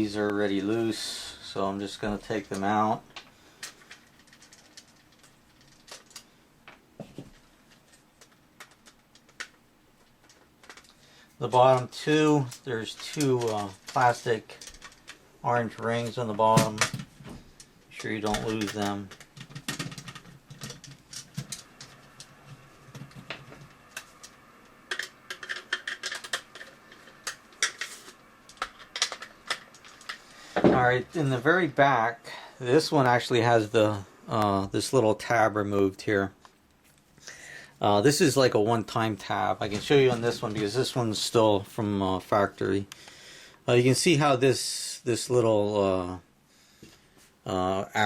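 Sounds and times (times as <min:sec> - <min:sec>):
small plastic parts clicking: 0:03.6 - 0:06.3, 0:07.7 - 0:11.0, 0:22.9 - 0:30.2.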